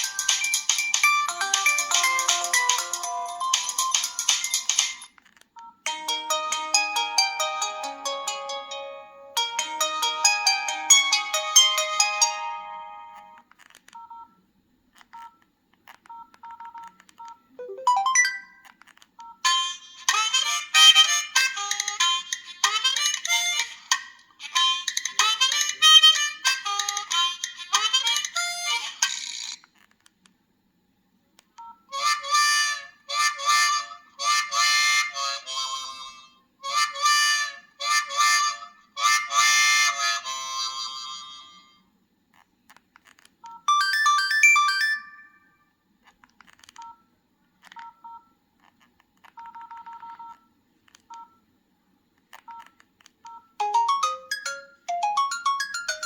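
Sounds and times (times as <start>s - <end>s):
phone ringtone melodies: 0.0s - 13.4s, 17.6s - 18.7s, 43.5s - 45.5s, 53.3s - 56.0s.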